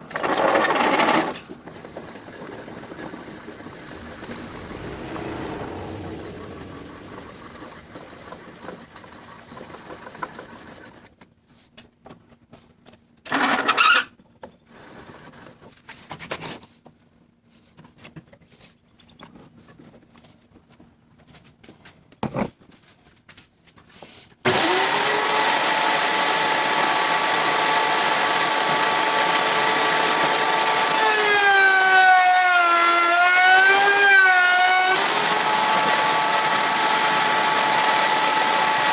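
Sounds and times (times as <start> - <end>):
router high whine: 24.5 - 38.9.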